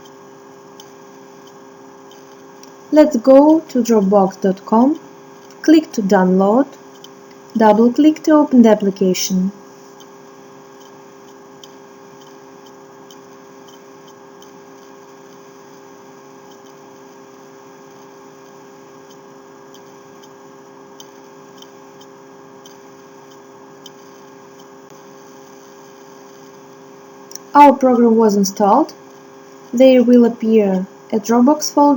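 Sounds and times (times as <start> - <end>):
electrical hum: 0.0 - 31.9
faint clicks: 0.8 - 2.8.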